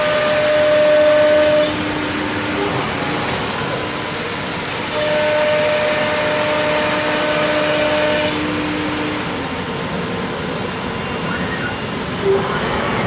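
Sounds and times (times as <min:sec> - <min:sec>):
machine router running: 0:00.2 - 0:06.4, 0:12.2 - 0:13.0.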